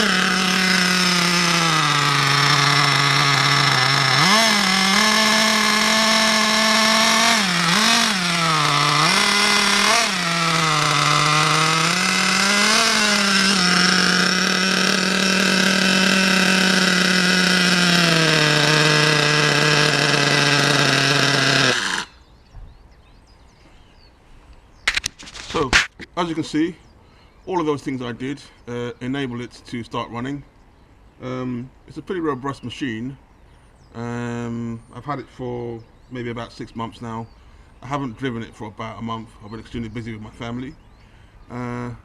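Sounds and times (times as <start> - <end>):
small nitro engine revving: 0.0 - 22.2.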